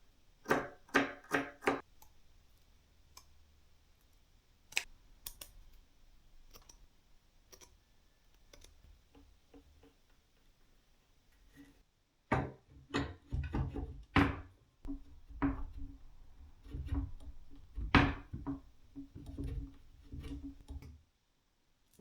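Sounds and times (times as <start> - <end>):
hard knocks: 12.3 - 20.9.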